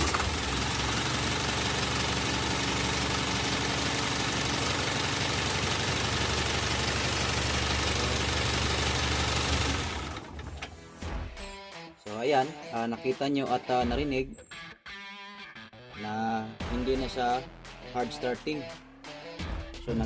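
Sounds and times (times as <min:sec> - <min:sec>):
diesel engine idling: 0:00.0 - 0:10.6.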